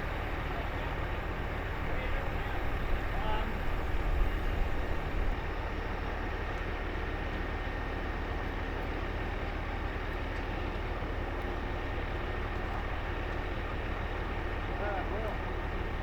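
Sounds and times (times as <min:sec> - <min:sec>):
boat engine rumbling: 0:00.0 - 0:07.6.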